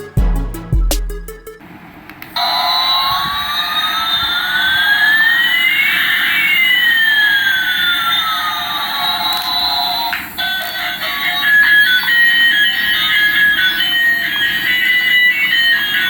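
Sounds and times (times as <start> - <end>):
rising and falling electronic tones: 0.0 - 1.6.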